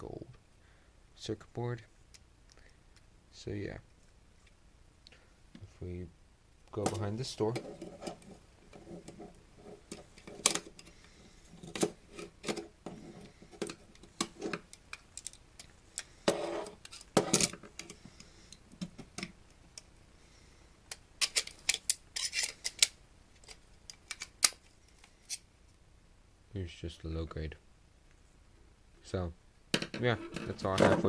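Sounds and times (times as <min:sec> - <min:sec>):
plastic parts clicking and rattling: 0:09.9 - 0:18.0, 0:20.9 - 0:25.4.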